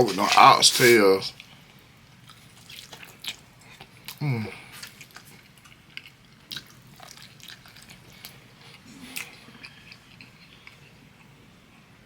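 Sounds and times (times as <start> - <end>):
person chewing: 1.4 - 11.4.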